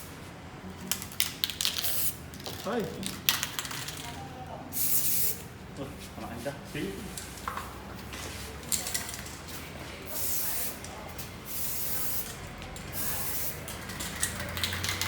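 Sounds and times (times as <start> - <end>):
aerosol spray can hissing: 4.8 - 5.4, 11.5 - 12.3, 12.9 - 13.6.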